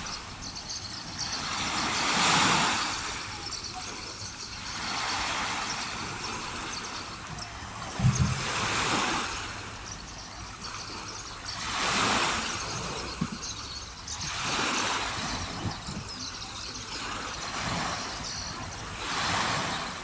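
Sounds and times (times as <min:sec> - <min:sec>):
water washing in swells: 0:00.0 - 0:20.0
short low thump: 0:07.9 - 0:08.8.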